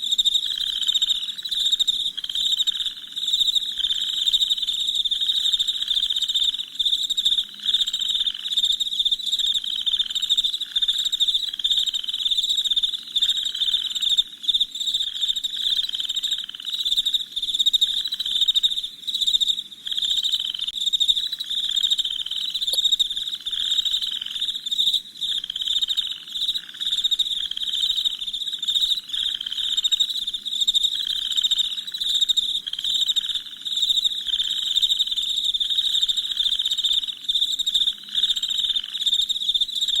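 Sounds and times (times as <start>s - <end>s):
crickets chirping: 0.0s - 40.0s.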